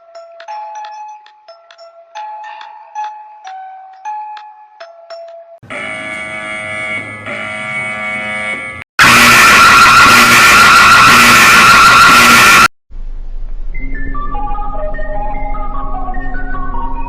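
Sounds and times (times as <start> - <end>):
distorted emergency alert alarm: 5.6 - 12.7.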